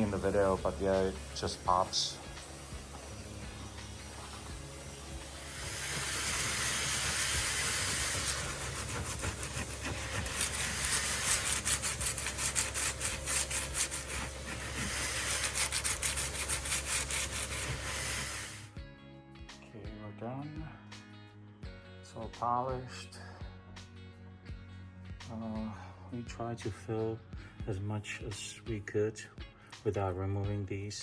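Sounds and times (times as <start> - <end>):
stone polishing rasp: 0.0 - 18.7.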